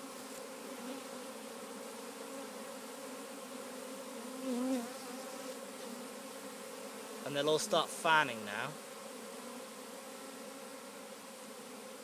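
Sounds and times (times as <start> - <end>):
honeybees buzzing: 0.0 - 12.0
loud wavering bee buzz: 0.0 - 12.0.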